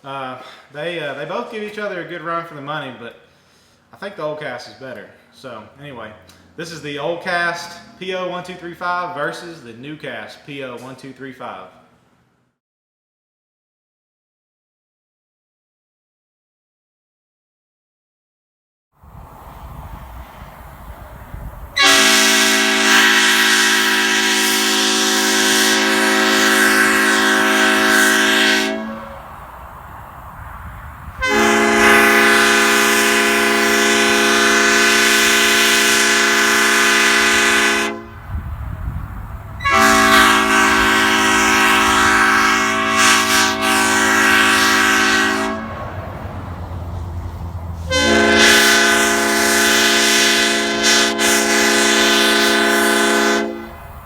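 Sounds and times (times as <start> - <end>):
air train horn blasts: 21.8 - 29.4, 31.2 - 38.4, 39.6 - 46.2, 47.1 - 53.9.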